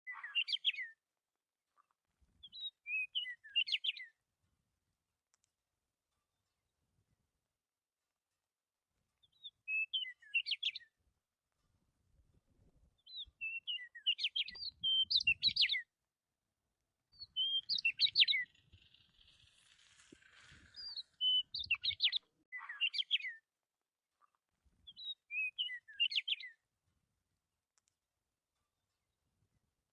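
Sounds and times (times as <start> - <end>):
songbird chirping and trilling: 0.0 - 1.0, 2.4 - 4.2, 9.2 - 11.0, 13.0 - 16.0, 17.1 - 23.5, 24.8 - 26.6.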